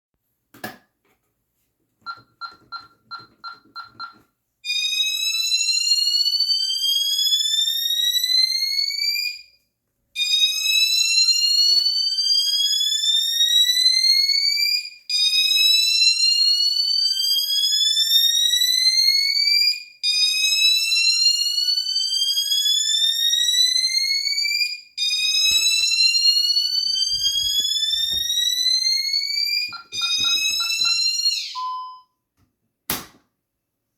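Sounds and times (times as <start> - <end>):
electronic siren rising wail: 22.8 - 31.8
alarm beeps: 25.0 - 28.8, 29.4 - 32.2.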